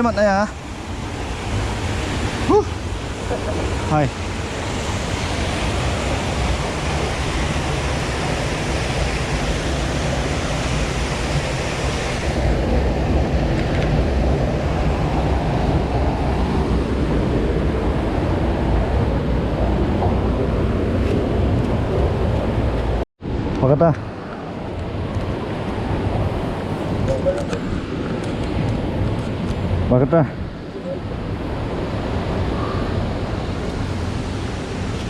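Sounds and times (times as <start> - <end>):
waterfall roaring: 0.0 - 23.0.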